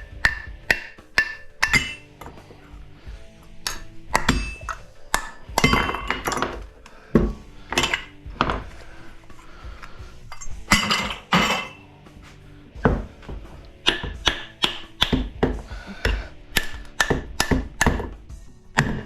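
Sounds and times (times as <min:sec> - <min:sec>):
hammer clanking on metal housing: 0:00.3 - 0:02.4.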